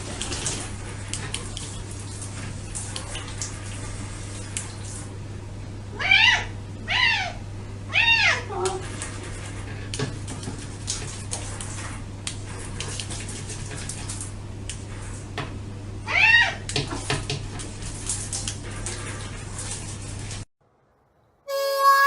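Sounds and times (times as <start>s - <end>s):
cat meowing: 21.5s - 22.0s.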